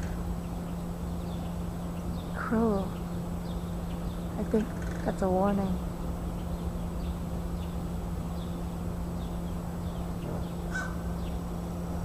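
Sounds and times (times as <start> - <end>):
steady low hum: 0.0 - 12.0
crow cawing: 10.7 - 11.2.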